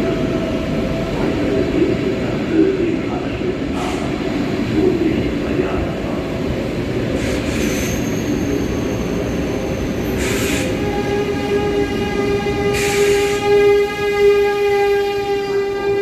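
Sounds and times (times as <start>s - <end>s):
train pulling in: 0.0s - 16.0s
short air hisses: 7.2s - 7.9s, 10.2s - 10.7s, 12.8s - 13.4s
high-pitched brake squeal: 7.2s - 10.8s.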